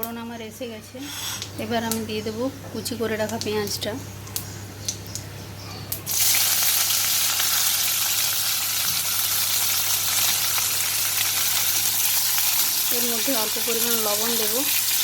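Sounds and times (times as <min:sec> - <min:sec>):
onion sizzling in hot oil: 0:06.0 - 0:15.0.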